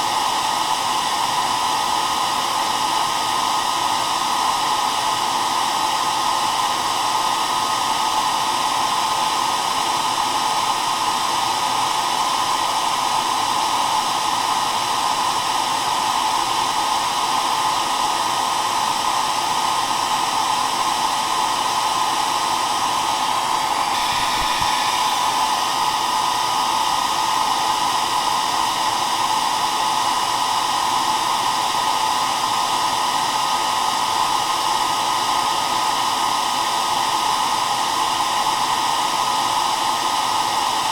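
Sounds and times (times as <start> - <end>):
hair dryer running: 0.0 - 40.9.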